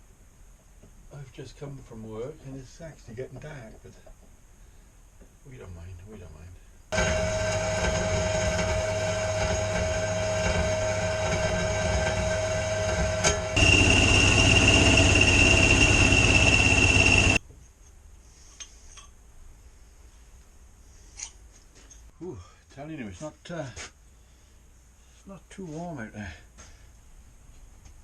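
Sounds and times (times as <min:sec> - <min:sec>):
electric arc welding buzz: 0:07.0 - 0:17.4.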